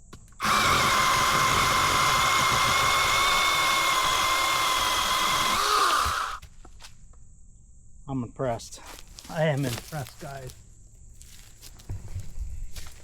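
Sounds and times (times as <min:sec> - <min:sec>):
chainsaw cutting wood: 0:00.3 - 0:06.4
chainsaw whining: 0:00.4 - 0:06.4.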